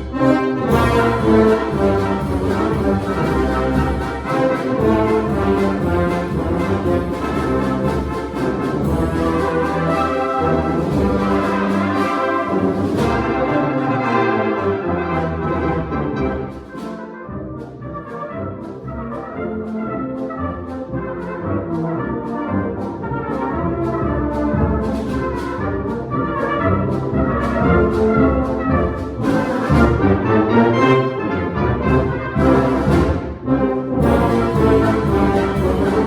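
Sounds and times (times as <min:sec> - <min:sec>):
orchestral music with brass: 0:00.0 - 0:36.0.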